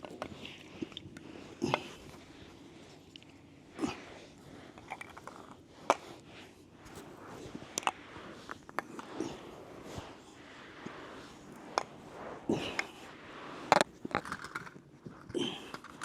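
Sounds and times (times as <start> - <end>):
soft rustling: 0.0 - 16.0
household items knocking and clicking: 13.7 - 16.0.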